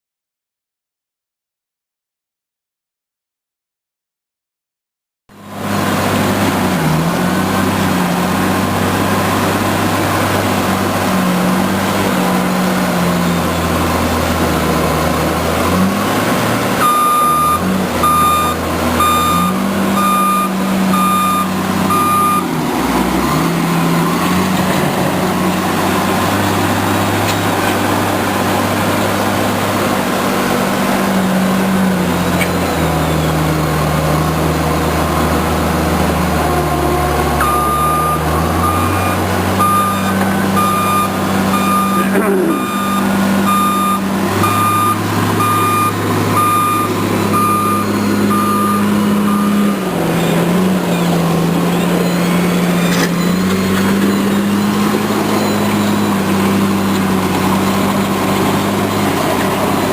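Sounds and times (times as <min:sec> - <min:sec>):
heavy machinery diesel engine: 0:05.3 - 0:59.9
reversing alarm beeping: 0:16.8 - 0:22.5, 0:37.4 - 0:57.9.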